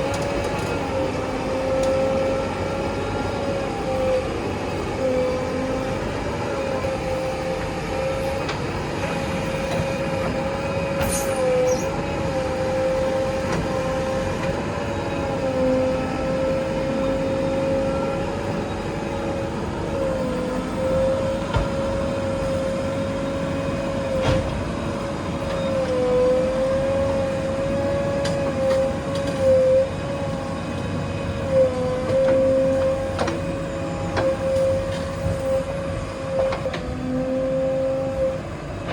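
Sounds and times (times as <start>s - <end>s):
backhoe diesel engine and hydraulics: 0.0s - 38.9s.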